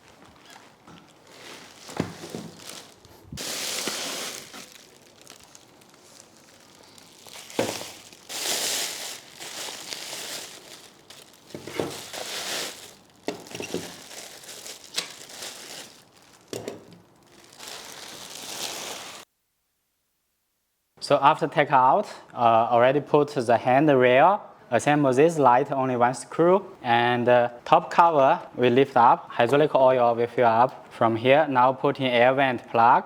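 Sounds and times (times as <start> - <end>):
packing material crinkling: 0.0 - 19.3.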